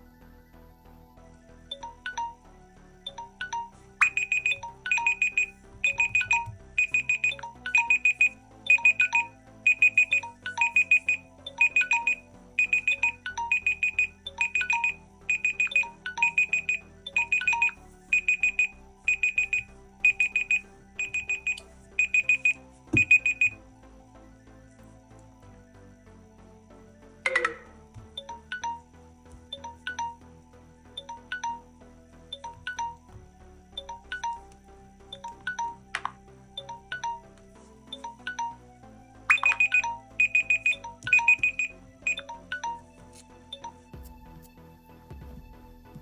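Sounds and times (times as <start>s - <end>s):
background music: 0.0s - 46.0s
phone alarm beeping: 1.7s - 2.4s, 3.1s - 23.6s, 27.3s - 28.8s, 29.5s - 30.2s, 31.0s - 31.7s, 32.4s - 33.0s, 33.8s - 34.4s, 35.1s - 37.3s, 37.9s - 38.6s, 39.3s - 42.9s.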